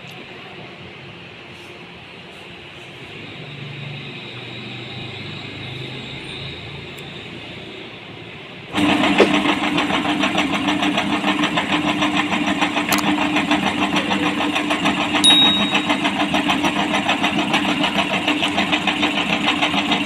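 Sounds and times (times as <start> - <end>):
meat grinder motor humming: 8.7 - 20.0.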